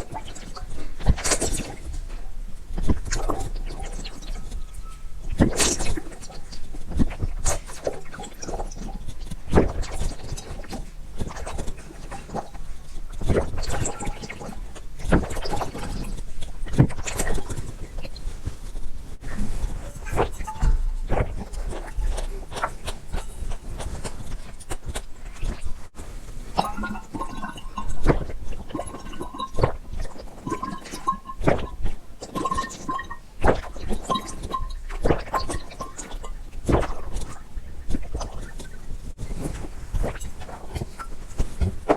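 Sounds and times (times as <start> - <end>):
gulping and swallowing water: 0.0 - 18.4, 19.2 - 25.8, 26.4 - 41.9.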